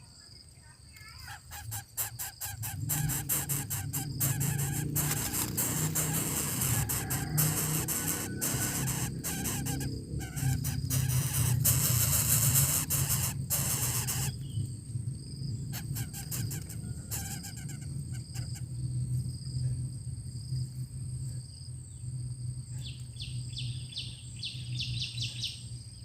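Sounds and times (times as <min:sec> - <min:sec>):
bird calls: 0:01.1 - 0:14.7, 0:15.6 - 0:18.7
steady low hum: 0:01.4 - 0:26.0
crackling clicking noise: 0:01.6 - 0:14.4.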